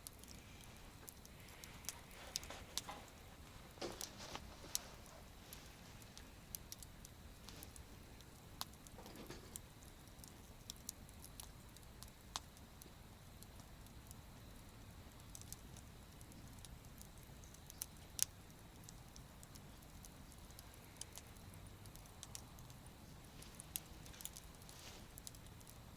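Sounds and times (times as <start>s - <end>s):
campfire crackling and popping: 0.0s - 25.9s.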